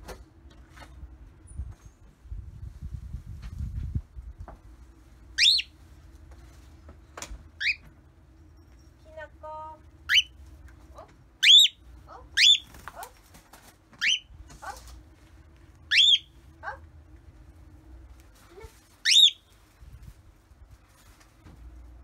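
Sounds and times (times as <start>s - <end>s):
cockatiel rising whistled calls: 15.9s - 16.3s.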